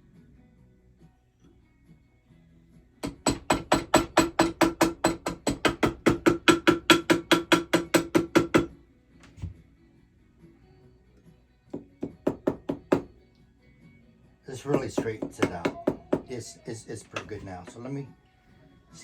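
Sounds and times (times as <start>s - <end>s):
hammer striking metal wire: 3.0s - 8.7s, 14.6s - 16.4s.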